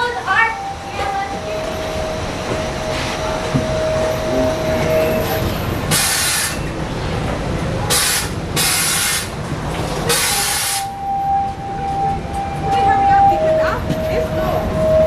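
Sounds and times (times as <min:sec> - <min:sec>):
ride train rumble: 0:00.0 - 0:15.0
compressed air hissing: 0:05.9 - 0:06.6.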